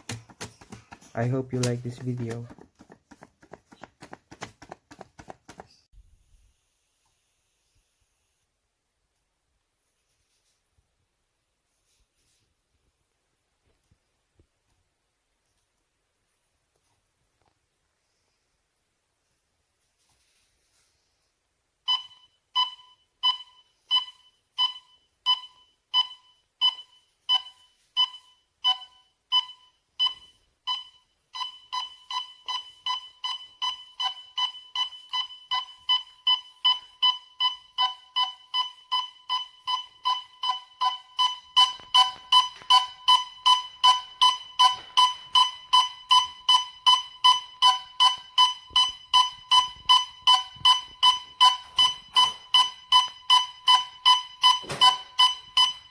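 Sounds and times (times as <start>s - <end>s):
gas detector alarm beeping: 21.9s - 55.9s.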